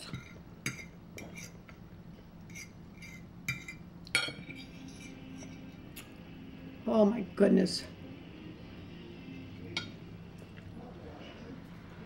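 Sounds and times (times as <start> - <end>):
cutlery clinking on a plate: 2.5 - 5.6.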